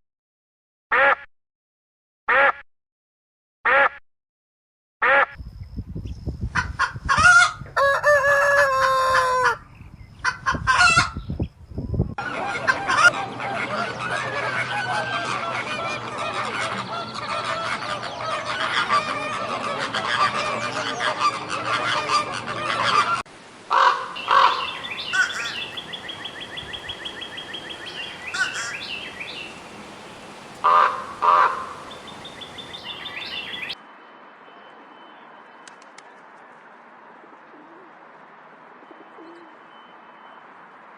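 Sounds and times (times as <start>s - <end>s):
chorus of many birds calling: 12.2s - 23.1s, 24.2s - 33.8s
loud pitched bird calls: 23.7s - 33.8s.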